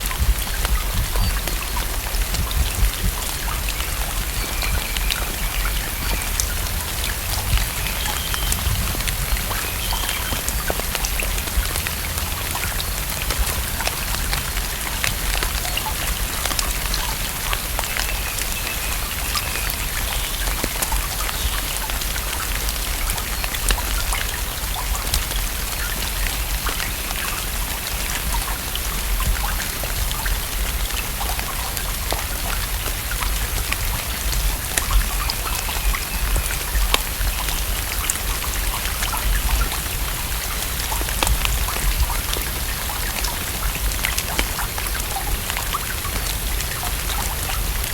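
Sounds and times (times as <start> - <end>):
rain falling on lake: 0.0 - 47.9.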